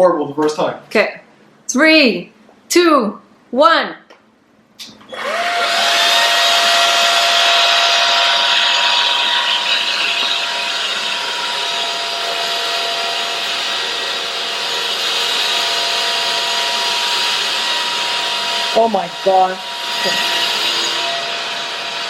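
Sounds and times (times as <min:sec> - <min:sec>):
stick vacuum motor whining: 0:04.8 - 0:22.0.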